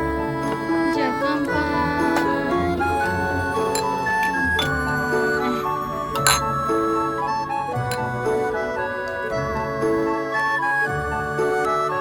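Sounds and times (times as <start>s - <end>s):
light tune of held notes: 0.0s - 12.0s.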